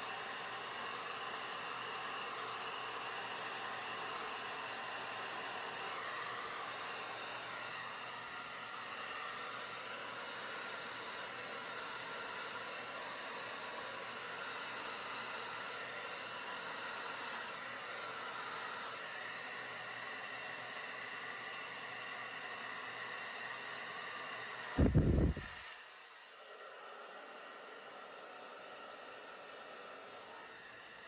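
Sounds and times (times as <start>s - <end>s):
air blower rushing: 24.8s - 25.6s.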